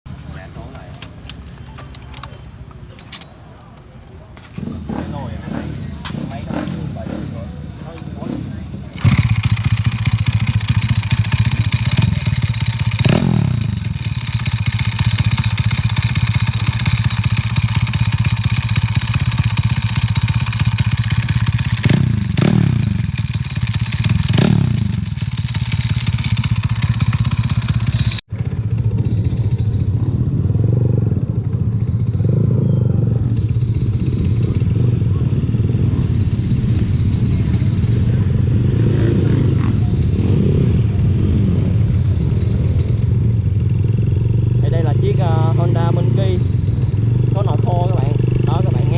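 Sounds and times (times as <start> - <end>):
motorcycle engine idling and revving: 0.1 - 48.9
clutch metallic rattle: 5.7 - 28.2.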